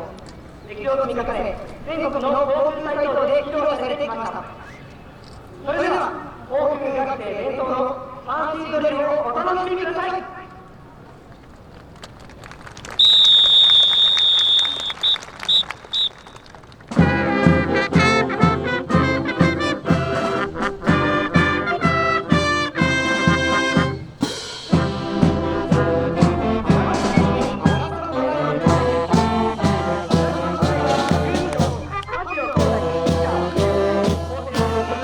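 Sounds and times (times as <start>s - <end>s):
whistle blasts: 13.0s - 16.5s, 21.1s - 32.9s
brass band music: 16.9s - 35.0s.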